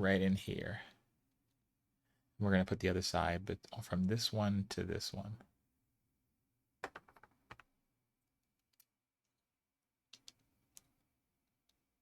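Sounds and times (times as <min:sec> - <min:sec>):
plastic pieces clicking together: 0:08.4 - 0:09.0, 0:10.1 - 0:10.9.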